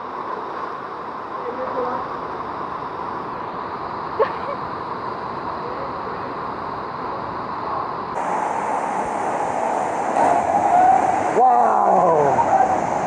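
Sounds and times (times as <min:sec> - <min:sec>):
waterfall and river rushing: 0:08.2 - 0:13.0.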